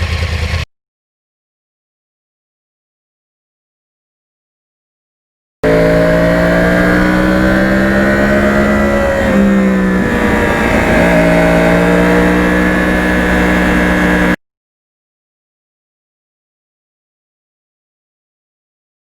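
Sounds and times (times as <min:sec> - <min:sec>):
motorcycle engine running: 0:05.6 - 0:14.4.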